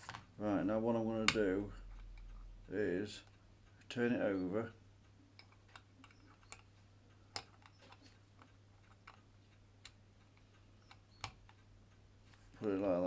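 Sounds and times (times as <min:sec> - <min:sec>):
low steady hum: 0:00.0 - 0:07.7
small clicks of watch parts and tools: 0:05.0 - 0:12.8.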